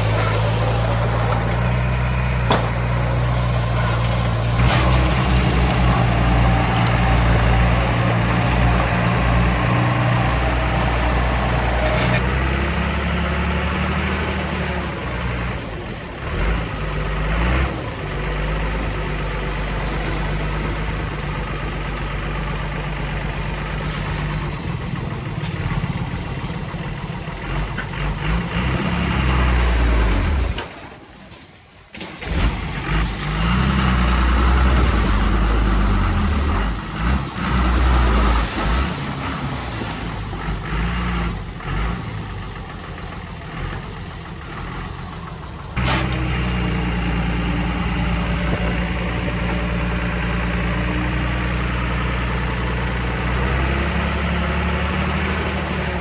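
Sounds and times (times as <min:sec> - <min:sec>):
heavy diesel engine running hard: 0:00.0 - 0:31.0, 0:32.0 - 0:56.0.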